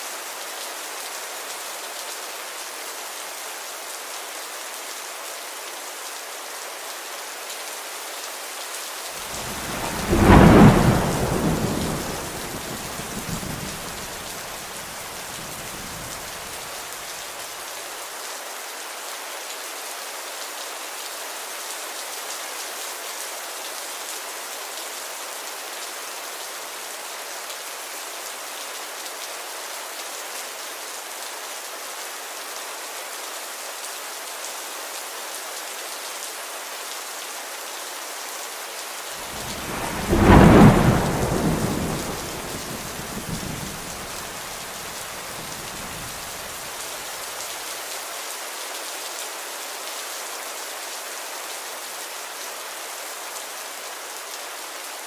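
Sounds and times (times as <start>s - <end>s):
steady rain falling: 0.0s - 55.0s
thunder clap rumbling: 9.3s - 14.6s, 39.2s - 46.6s.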